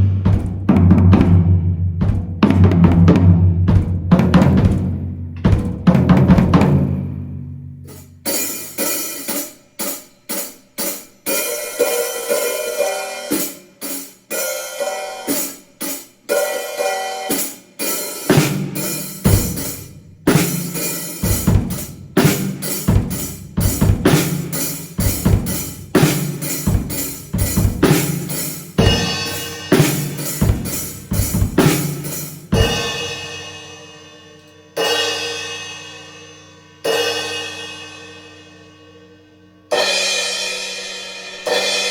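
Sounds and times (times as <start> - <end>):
drum kit playing: 0.0 - 39.0, 39.7 - 41.9
cymbal crashes: 28.0 - 39.1.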